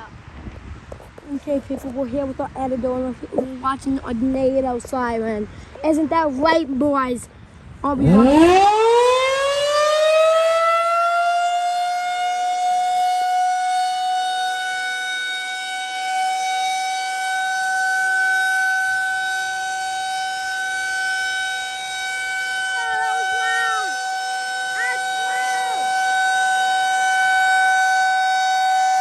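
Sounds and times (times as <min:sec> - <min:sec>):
tornado siren steady tone: 0:07.6 - 0:29.0.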